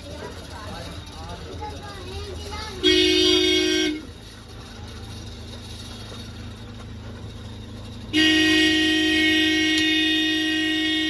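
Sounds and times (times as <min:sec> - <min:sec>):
loud horn-like tone: 0:02.8 - 0:04.1, 0:08.1 - 0:11.0.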